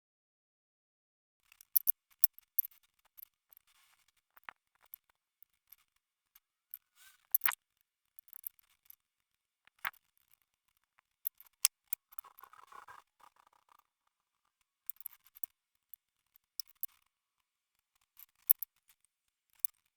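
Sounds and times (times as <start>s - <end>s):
small hard objects clicking: 1.5s - 1.9s, 7.3s - 7.6s, 14.9s - 15.5s, 16.6s - 17.0s.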